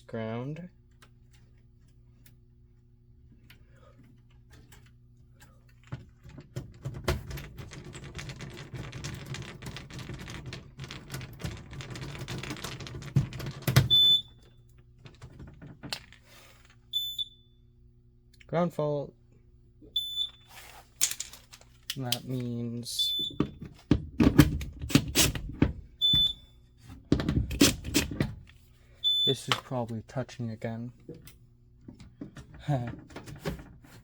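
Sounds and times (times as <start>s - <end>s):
low steady hum: 0.0s - 34.0s
wiring clicking and rattling: 3.3s - 14.0s, 21.0s - 22.5s.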